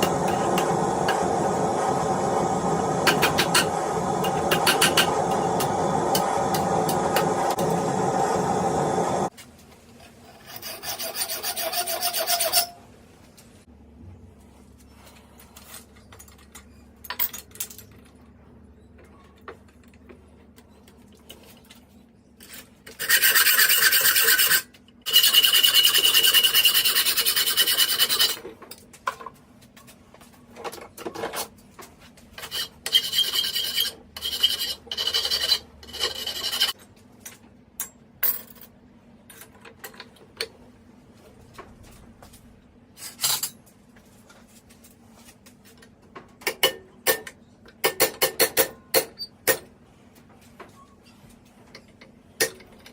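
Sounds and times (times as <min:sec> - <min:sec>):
hand file rasping on steel: 0:10.3 - 0:12.8.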